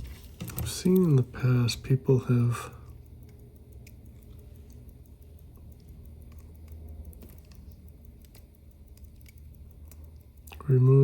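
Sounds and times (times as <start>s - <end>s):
steady low hum: 0.0s - 11.0s
small tool clicks and taps: 2.3s - 10.7s.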